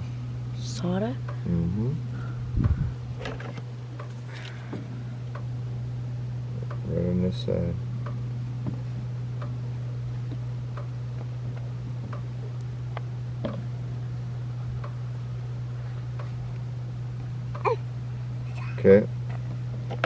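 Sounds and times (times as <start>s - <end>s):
low electrical hum: 0.0s - 20.0s.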